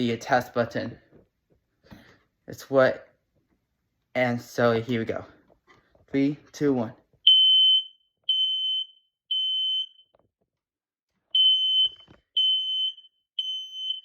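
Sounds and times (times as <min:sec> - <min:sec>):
smoke alarm high-pitched beeps: 0:07.3 - 0:10.2, 0:11.4 - 0:14.0.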